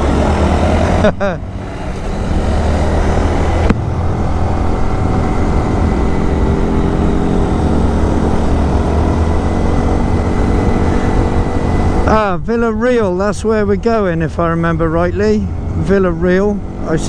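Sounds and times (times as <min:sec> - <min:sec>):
motorcycle engine cruising: 0:00.0 - 0:12.3, 0:12.9 - 0:17.0
wind rumble on microphone: 0:01.6 - 0:17.0.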